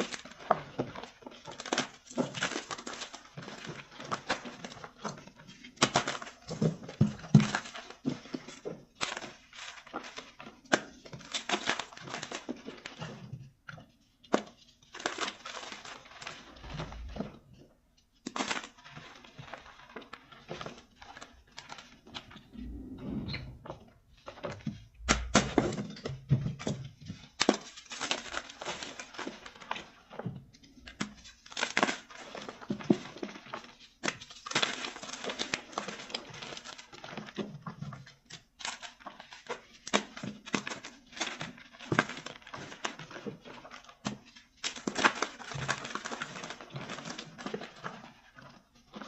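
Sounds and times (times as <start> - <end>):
chalk crunching and crumbling: 26.6 - 30.2.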